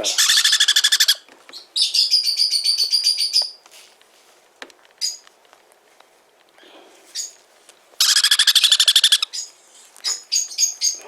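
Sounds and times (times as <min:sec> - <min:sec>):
parrot chick calling: 0:00.0 - 0:03.6, 0:08.0 - 0:11.0.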